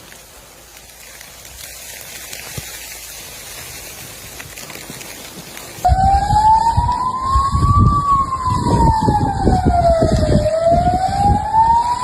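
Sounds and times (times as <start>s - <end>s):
siren wailing: 5.8s - 12.0s.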